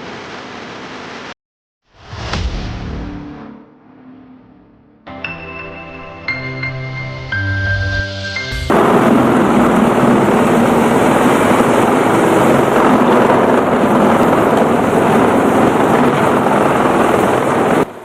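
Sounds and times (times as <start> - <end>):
heavy machinery running: 8.5 - 18.0.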